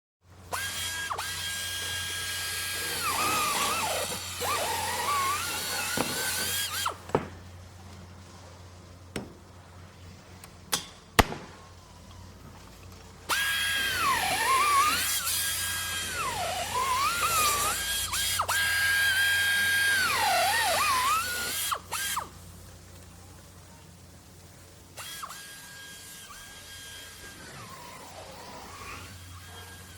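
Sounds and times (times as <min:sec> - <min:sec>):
power drill whining: 0:00.5 - 0:07.0, 0:13.3 - 0:22.3, 0:25.0 - 0:29.9.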